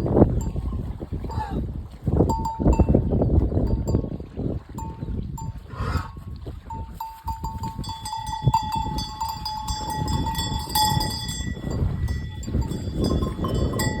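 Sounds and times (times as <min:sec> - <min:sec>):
cowbells clanking: 0:00.0 - 0:01.4, 0:02.3 - 0:03.0, 0:03.6 - 0:04.1, 0:04.8 - 0:05.6, 0:06.7 - 0:14.0.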